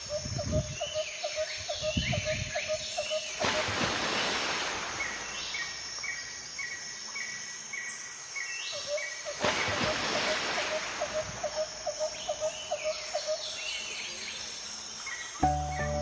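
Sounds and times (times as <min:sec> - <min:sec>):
short high repeated note: 0:15.4 - 0:16.0.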